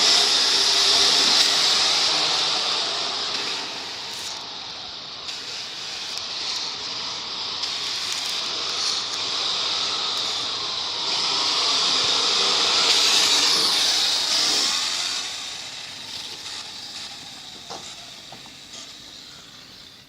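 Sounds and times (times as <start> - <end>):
model car hissing: 0.0 - 20.0.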